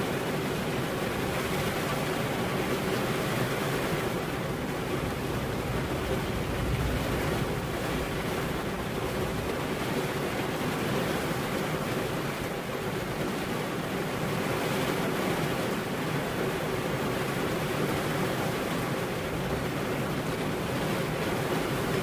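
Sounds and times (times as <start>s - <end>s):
heavy rain: 0.0s - 22.0s
distant thunder rumble: 2.7s - 12.6s.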